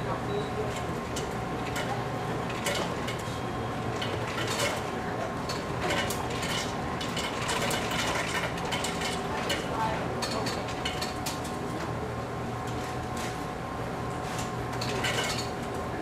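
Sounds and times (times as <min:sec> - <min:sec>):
kitchen equipment humming: 0:00.0 - 0:16.0
dishes and utensils clattering: 0:14.8 - 0:15.6.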